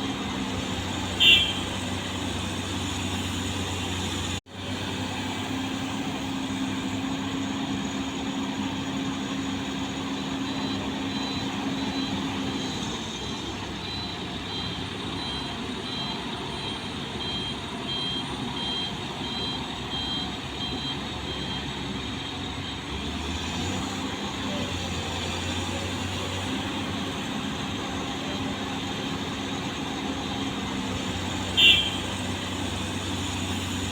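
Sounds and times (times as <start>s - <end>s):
bulldozer diesel engine running: 0.0s - 33.9s.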